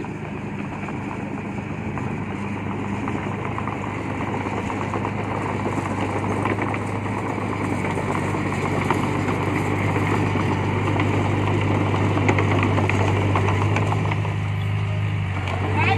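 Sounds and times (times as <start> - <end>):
bulldozer diesel engine running: 0.0 - 15.9.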